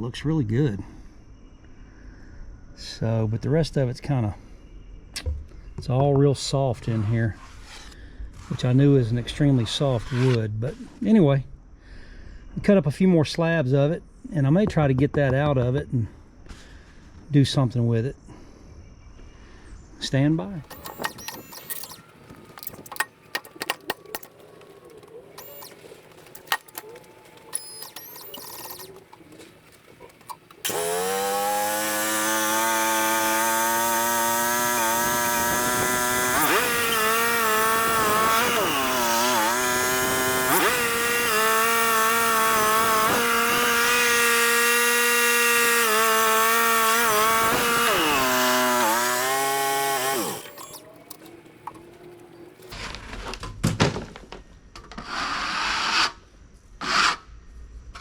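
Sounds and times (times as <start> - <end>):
band sawmill sawing a log: 20.6 - 50.9.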